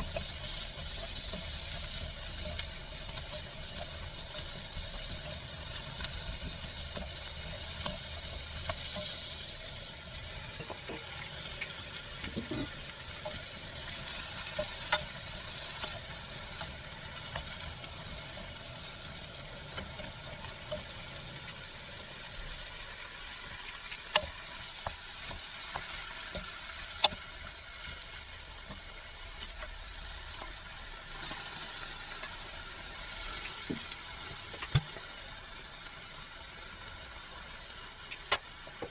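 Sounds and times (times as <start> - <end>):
utensil clicking against pan: 0.0 - 9.5, 10.6 - 18.0, 23.9 - 28.0
food sizzling in a frying pan: 0.0 - 38.9.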